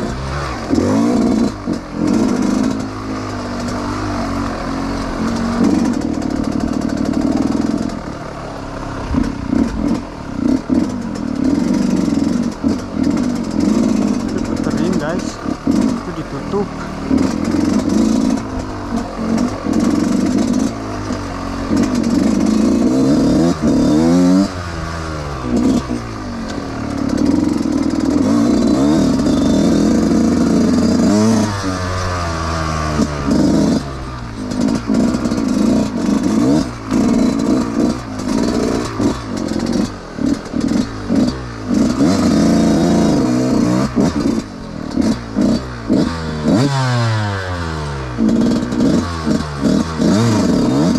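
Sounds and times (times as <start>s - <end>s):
dirt bike engine revving: 0.0s - 50.9s.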